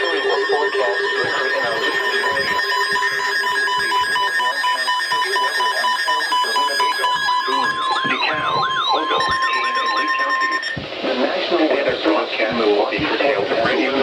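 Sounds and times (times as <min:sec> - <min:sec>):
steady alert tone: 0:00.0 - 0:11.0
siren-like warble: 0:00.0 - 0:11.2
rapid alarm beeping: 0:00.0 - 0:13.9.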